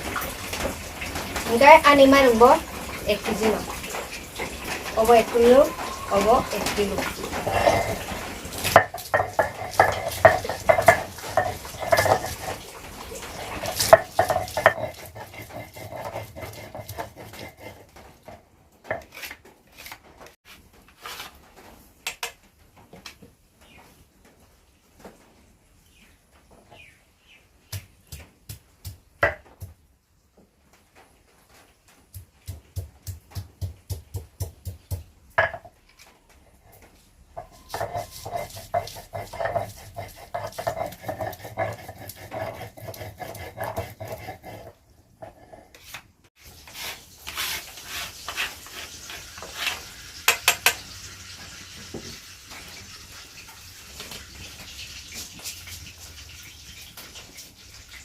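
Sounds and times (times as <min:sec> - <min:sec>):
pots and pans clattering: 0:03.2 - 0:19.0, 0:37.3 - 0:44.6, 0:48.3 - 0:51.1.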